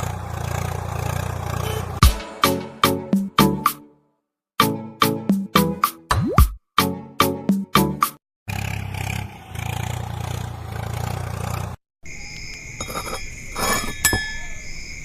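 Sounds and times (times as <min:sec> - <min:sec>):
diesel engine throbbing: 0:00.0 - 0:02.0, 0:08.5 - 0:11.8.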